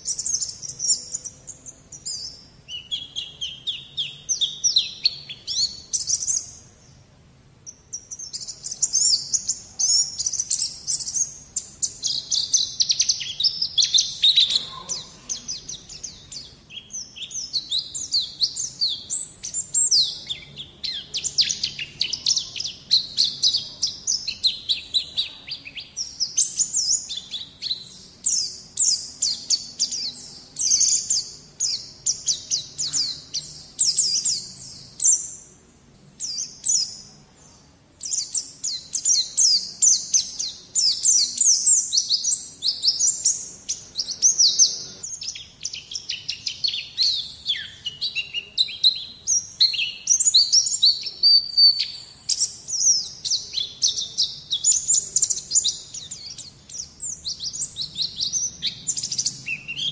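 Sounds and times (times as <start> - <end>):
bird twittering chirps and trills: 0.0 - 59.9.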